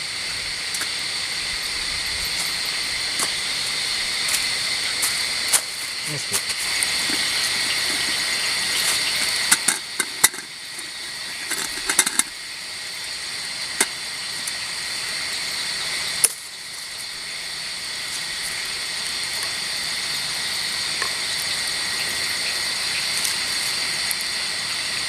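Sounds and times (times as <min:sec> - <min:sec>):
high-pitched insect chorus: 0:00.0 - 0:25.0
sharp clicks and knocks: 0:08.8 - 0:12.3.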